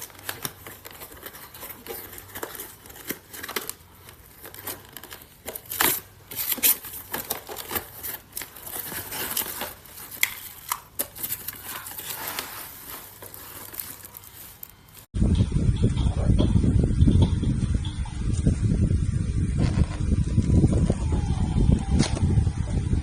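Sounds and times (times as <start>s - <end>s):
plastic packaging crinkling and tearing: 0.0s - 15.1s.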